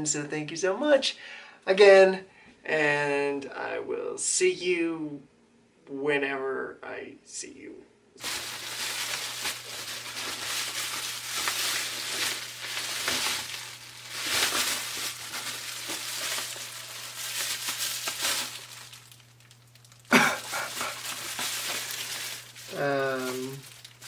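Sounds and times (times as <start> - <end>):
packaging rustling: 8.2 - 24.0.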